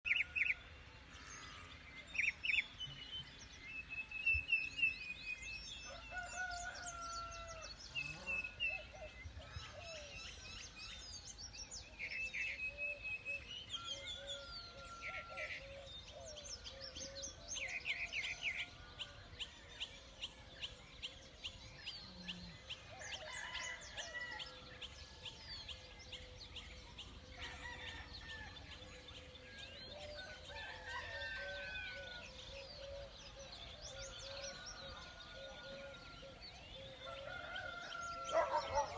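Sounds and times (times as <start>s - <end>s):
small birds chirping and trilling: 0.0s - 38.9s
rooster crowing: 5.9s - 7.8s, 30.2s - 32.3s, 37.0s - 38.9s.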